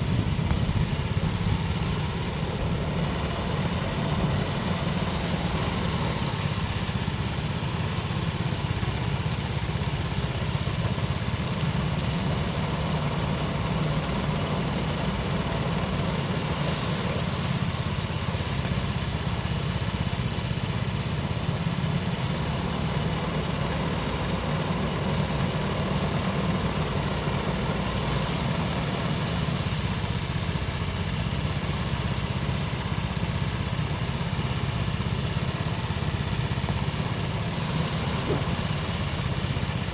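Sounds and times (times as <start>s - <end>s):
thresher engine running: 0.0s - 39.9s
bright hiss: 36.8s - 39.9s.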